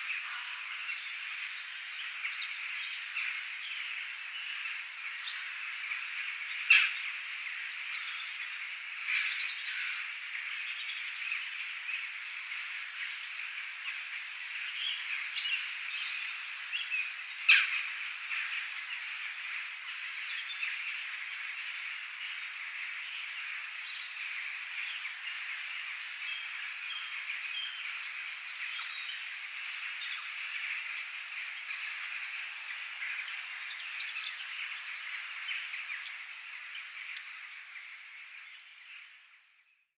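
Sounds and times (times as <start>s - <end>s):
steady rain hiss: 0.0s - 39.8s.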